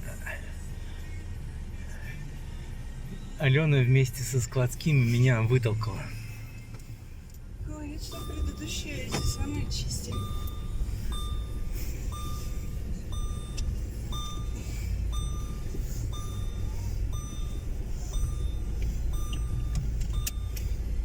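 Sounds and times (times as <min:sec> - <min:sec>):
car engine and road rumble: 0:00.0 - 0:21.0
short electronic beep: 0:08.1 - 0:20.8.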